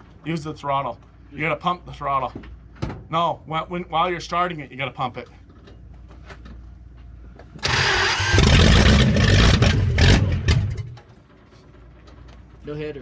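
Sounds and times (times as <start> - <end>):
engine cranking: 7.6 - 11.0
engine running rough: 7.6 - 11.0.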